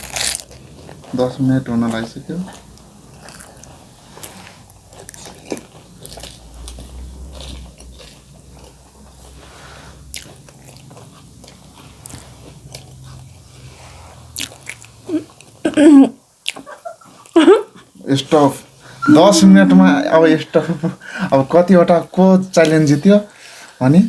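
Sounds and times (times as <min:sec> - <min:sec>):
crisp shells crunching: 0:00.0 - 0:01.5
chewing: 0:00.0 - 0:15.6, 0:16.4 - 0:17.4.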